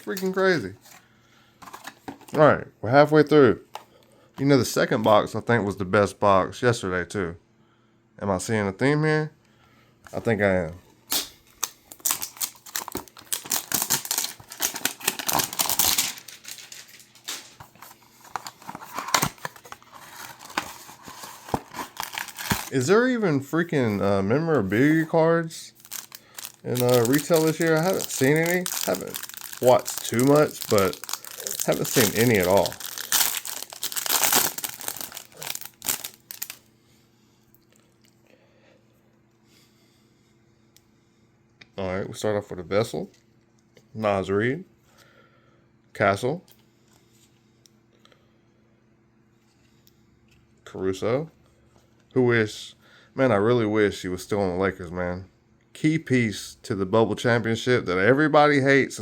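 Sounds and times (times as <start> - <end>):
cards rustling and clicking: 11.1 - 22.9, 25.7 - 36.6
packaging crinkling: 11.4 - 23.0, 25.7 - 36.6
cardboard tearing: 12.0 - 22.8, 25.8 - 36.6.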